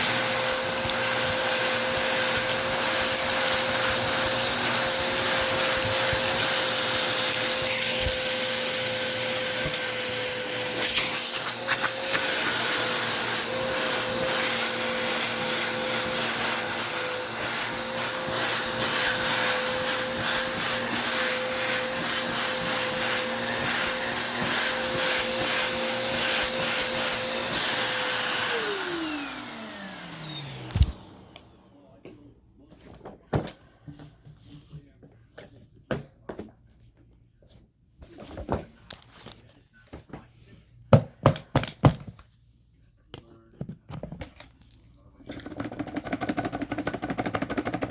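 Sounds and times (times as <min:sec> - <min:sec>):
vacuum cleaner whining: 0:00.0 - 0:32.3.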